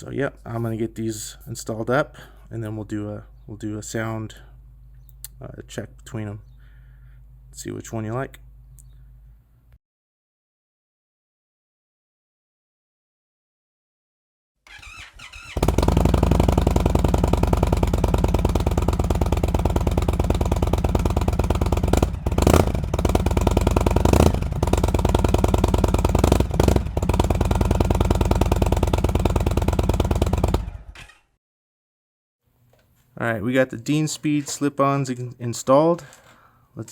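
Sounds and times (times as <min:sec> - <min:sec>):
motorcycle engine idling: 0:04.4 - 0:05.2, 0:14.7 - 0:31.0.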